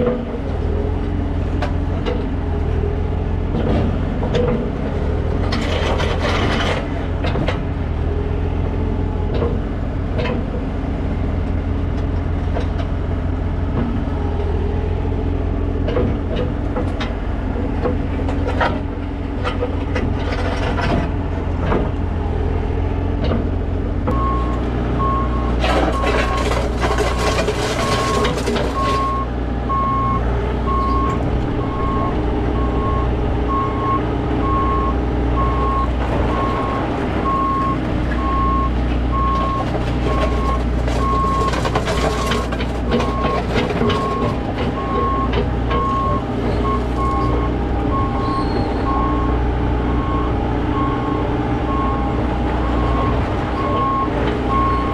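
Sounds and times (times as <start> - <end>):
diesel engine under load: 0.0 - 54.9
clanks and knocks of digging: 3.5 - 7.8, 15.8 - 22.0, 25.5 - 29.3, 37.3 - 47.5
backup alarm beeping: 27.1 - 41.6, 43.0 - 49.4, 50.0 - 54.9.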